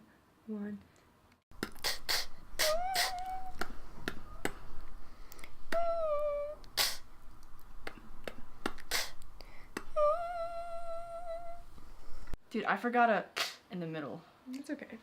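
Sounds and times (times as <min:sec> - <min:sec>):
mouth hissing bursts: 0:01.6 - 0:03.4, 0:06.8 - 0:07.1, 0:08.8 - 0:09.2
mouth clicks and pops: 0:01.6 - 0:04.7, 0:06.6 - 0:10.0
person humming notes: 0:01.9 - 0:04.7, 0:05.6 - 0:07.0, 0:09.8 - 0:11.7.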